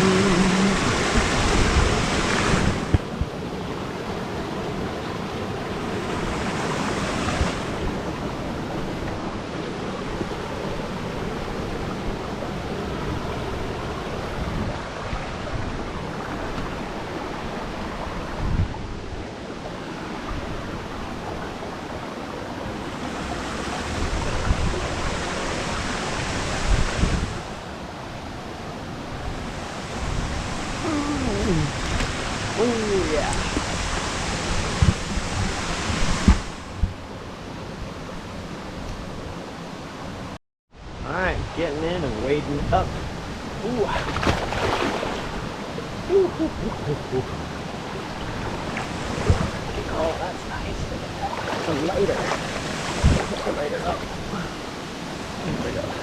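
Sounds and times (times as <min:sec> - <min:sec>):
waterfall rushing: 0:00.0 - 0:02.9, 0:29.5 - 0:36.7, 0:43.6 - 0:56.0
wind thumps on microphone: 0:00.0 - 0:03.4, 0:18.1 - 0:19.1, 0:23.9 - 0:27.5, 0:33.2 - 0:37.1, 0:48.3 - 0:50.0, 0:50.7 - 0:53.6.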